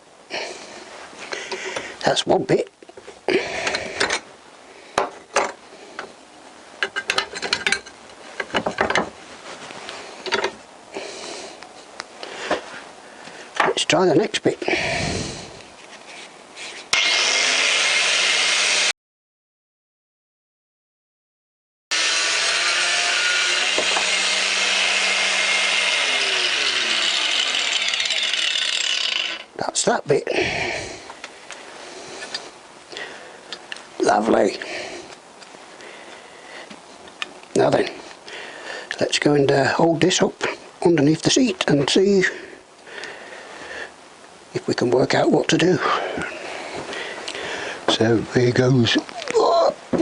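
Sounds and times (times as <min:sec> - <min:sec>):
angle grinder cutting steel: 0:16.9 - 0:18.9, 0:21.9 - 0:29.6.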